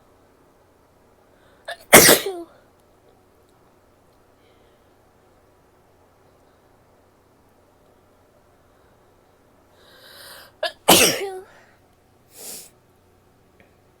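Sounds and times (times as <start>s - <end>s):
woman sneezing: 1.7s - 2.5s, 10.6s - 11.6s
short breath: 9.7s - 10.6s.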